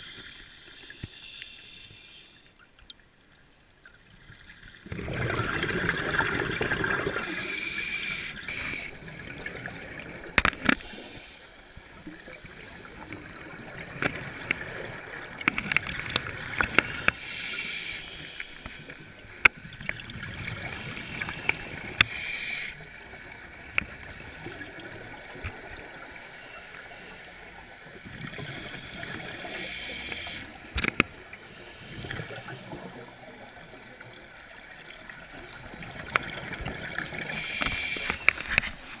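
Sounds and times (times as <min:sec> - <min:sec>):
diver exhaling bubbles: 0:04.8 - 0:10.2.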